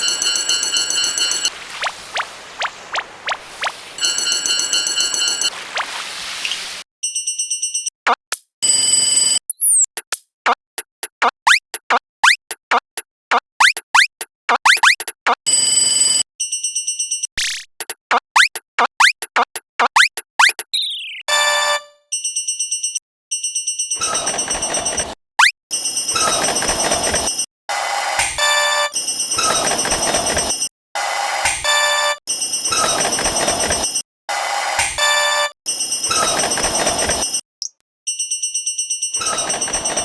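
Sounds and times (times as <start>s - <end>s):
railroad crossing bell: 0.0s - 1.5s, 4.0s - 5.5s
pulsing electronic alarm tone: 0.0s - 6.8s
falling glides: 0.6s - 6.8s
rising whistle-like chirps: 1.2s - 6.8s, 20.8s - 21.3s.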